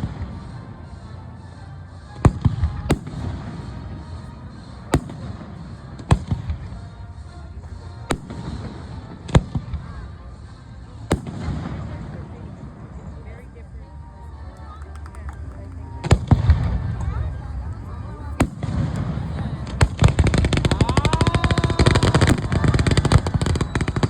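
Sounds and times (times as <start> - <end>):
small firework pops: 2.2 - 3.4, 4.9 - 6.6, 7.7 - 9.8, 11.1 - 11.9, 14.5 - 17.1, 17.8 - 24.0
fireworks bursting with bangs: 2.2 - 10.0, 10.9 - 12.3, 15.0 - 24.0
steady low rumble: 15.2 - 24.0.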